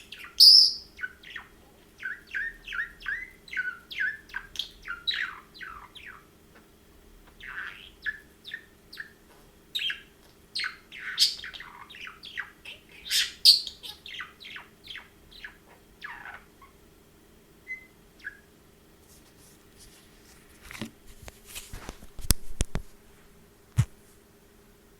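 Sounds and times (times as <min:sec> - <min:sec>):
budgerigars chirping: 0:00.0 - 0:16.8, 0:17.6 - 0:18.5
faint steady hum: 0:00.0 - 0:24.9.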